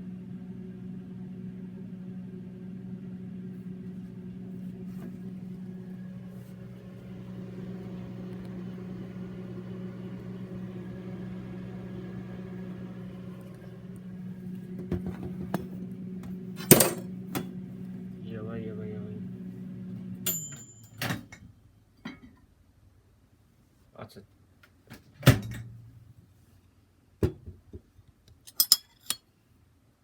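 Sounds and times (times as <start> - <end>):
microwave oven humming: 0.0 - 21.7.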